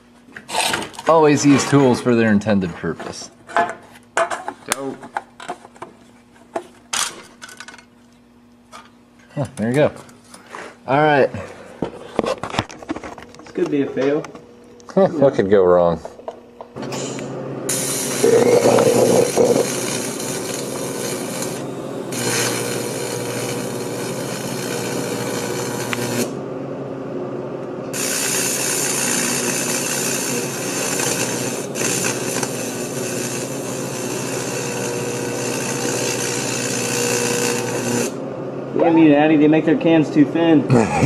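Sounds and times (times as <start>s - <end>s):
welding arc buzzing: 14.4s - 26.8s, 27.5s - 38.9s.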